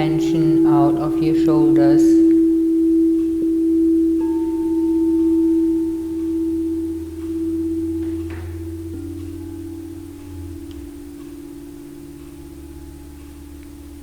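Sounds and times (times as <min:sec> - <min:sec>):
meditation music tones over drone: 0:00.0 - 0:14.0.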